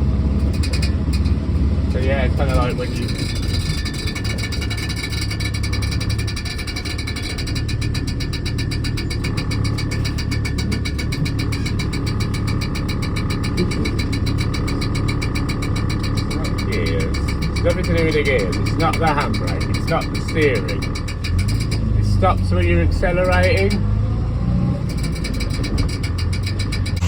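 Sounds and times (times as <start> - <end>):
hose rattling against fan blades: 0.0 - 24.0, 24.6 - 27.0
car engine running: 0.0 - 27.0.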